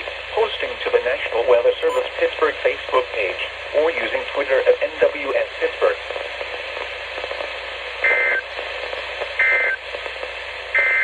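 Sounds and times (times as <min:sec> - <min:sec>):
radio hiss: 0:00.0 - 0:11.0
two-tone data bursts: 0:08.0 - 0:08.5, 0:09.4 - 0:09.8, 0:10.7 - 0:11.0.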